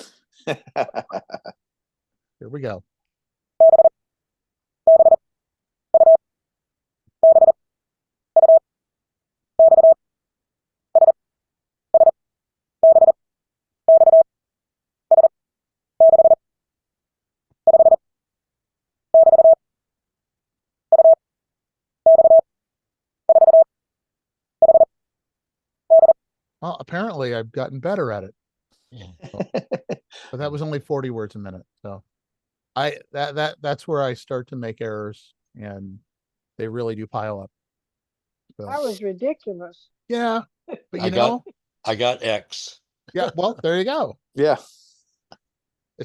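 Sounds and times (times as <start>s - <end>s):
morse code beeps: 3.6s - 3.9s, 4.9s - 5.2s, 6.0s - 6.2s, 7.2s - 7.6s, 8.4s - 8.6s, 9.6s - 10.0s, 12.8s - 13.2s, 13.9s - 14.2s, 16.0s - 16.4s, 17.7s - 18.0s, 19.2s - 19.6s, 21.0s - 21.2s, 22.1s - 22.4s, 23.3s - 23.7s, 24.6s - 24.9s, 25.9s - 26.2s.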